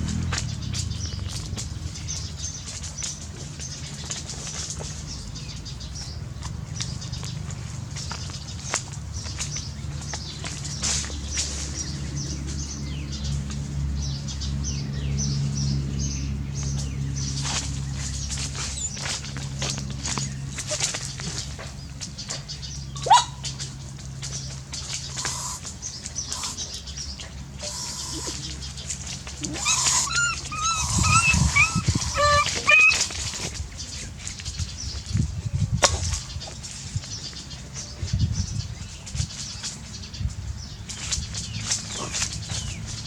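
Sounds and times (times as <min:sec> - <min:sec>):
puppy whimpering and yelping: 0:29.4 - 0:33.2.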